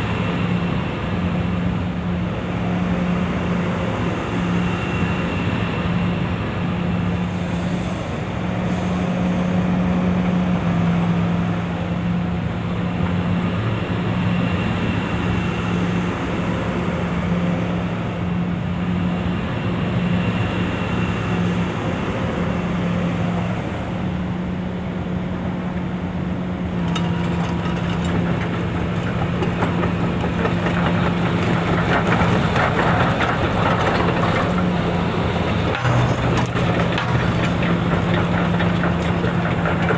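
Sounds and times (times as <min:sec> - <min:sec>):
excavator diesel engine hum: 0:22.6 - 0:39.9
clatter of clicks and knocks: 0:26.8 - 0:39.9.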